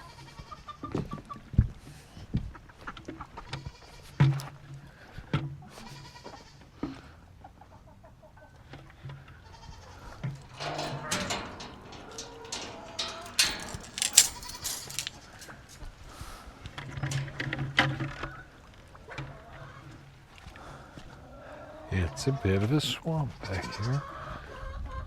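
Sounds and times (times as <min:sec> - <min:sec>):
sharp knocks and clatter: 0:10.4 - 0:15.8.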